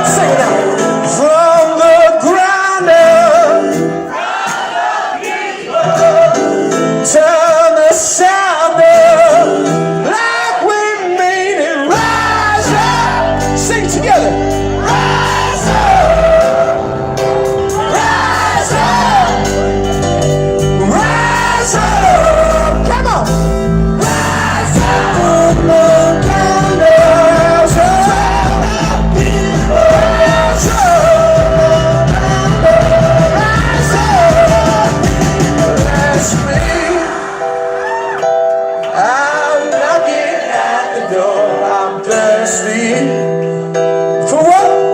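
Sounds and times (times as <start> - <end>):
live rock band playing: 0.0 - 4.1, 11.9 - 39.2
loud singing: 0.0 - 23.0, 24.0 - 43.3.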